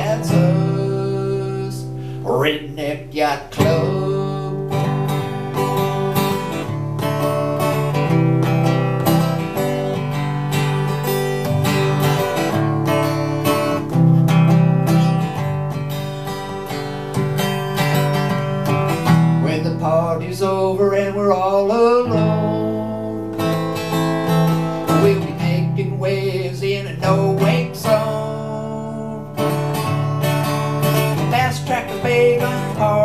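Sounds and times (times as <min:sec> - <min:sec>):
acoustic guitar strumming: 0:00.0 - 0:33.0.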